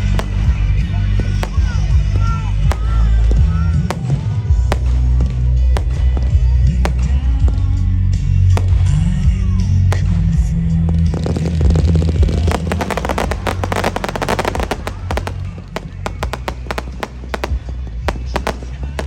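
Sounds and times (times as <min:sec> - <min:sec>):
fireworks crackling and popping: 0:00.0 - 0:19.0
loud music with heavy bass: 0:12.4 - 0:17.4.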